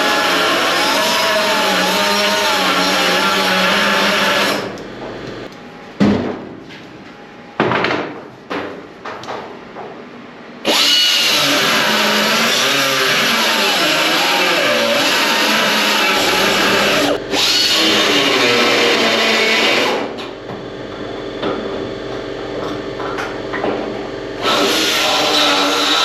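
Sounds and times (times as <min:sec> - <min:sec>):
angle grinder cutting steel: 0:00.0 - 0:04.7, 0:10.7 - 0:20.1, 0:24.4 - 0:26.0.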